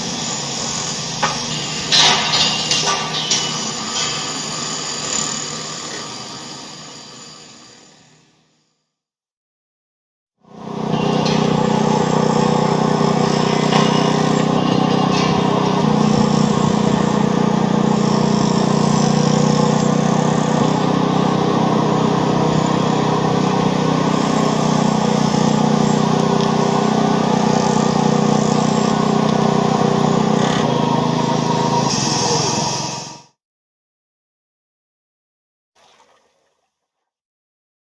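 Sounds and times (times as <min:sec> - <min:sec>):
low machine-like hum: 0:10.6 - 0:32.9.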